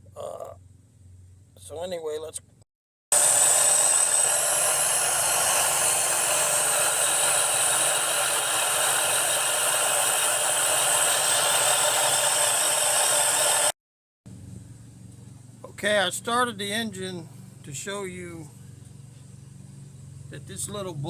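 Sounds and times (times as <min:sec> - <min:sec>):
supercharged engine hiss: 0:03.1 - 0:13.7.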